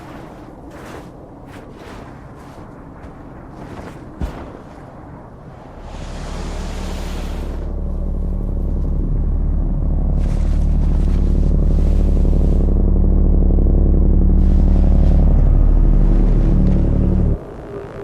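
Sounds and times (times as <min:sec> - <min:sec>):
deep droning bass synth: 0:05.0 - 0:18.0.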